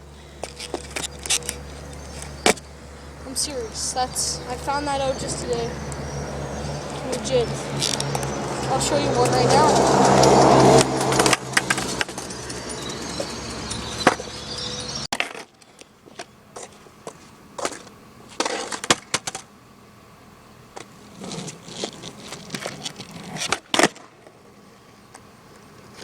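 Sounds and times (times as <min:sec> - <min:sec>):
skateboard wheels rolling: 0:00.0 - 0:19.5, 0:20.5 - 0:26.0
skateboard clacks: 0:15.2 - 0:19.5, 0:20.7 - 0:26.0.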